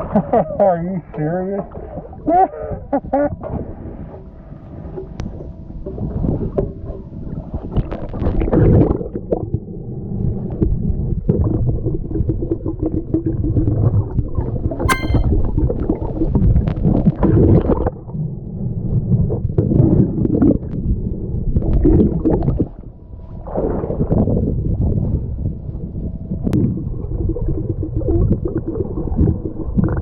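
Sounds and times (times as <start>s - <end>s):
sharp ringing click: 14.9s - 15.5s
underwater rumble and gurgling: 18.2s - 30.0s.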